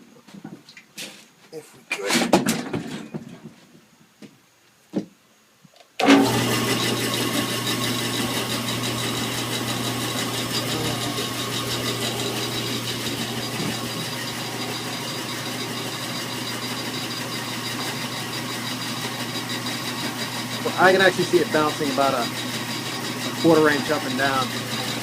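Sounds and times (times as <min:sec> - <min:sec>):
bandsaw running: 0:06.0 - 0:25.0
loud mechanical din: 0:06.0 - 0:25.0.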